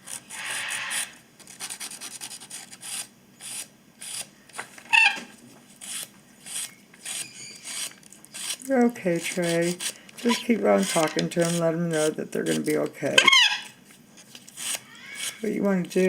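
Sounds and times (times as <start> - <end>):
bird squawking: 0.3 - 1.2, 4.9 - 5.3, 13.2 - 13.8, 14.8 - 15.5
nail file rasping: 5.8 - 12.8, 14.6 - 15.5.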